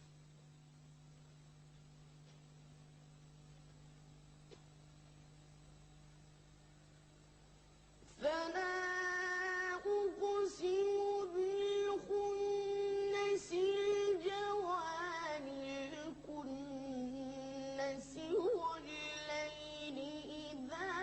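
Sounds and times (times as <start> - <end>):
child chanting melodically: 8.2 - 21.0.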